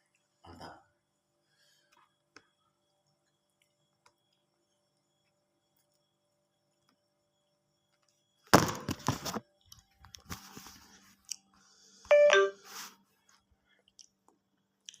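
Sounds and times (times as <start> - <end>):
electronic chime: 12.1 - 12.8.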